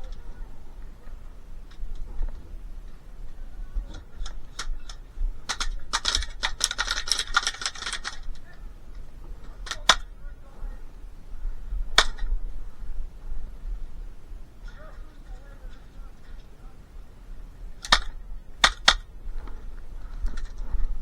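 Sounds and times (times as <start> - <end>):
airsoft guns firing: 4.3 - 8.4, 9.6 - 10.1, 12.0 - 12.4, 17.8 - 19.1.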